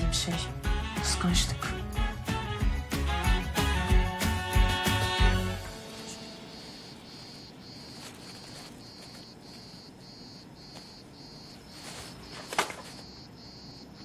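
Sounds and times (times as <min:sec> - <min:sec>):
crickets chirping: 0:05.6 - 0:14.0.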